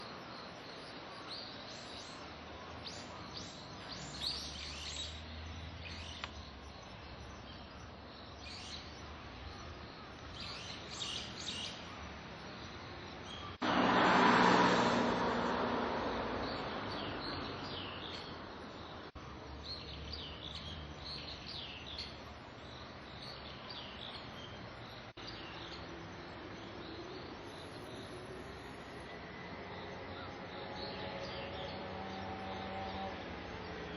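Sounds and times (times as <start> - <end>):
small birds chirping: 0.0 - 13.6, 16.4 - 29.1
outdoor background noise: 0.0 - 33.9.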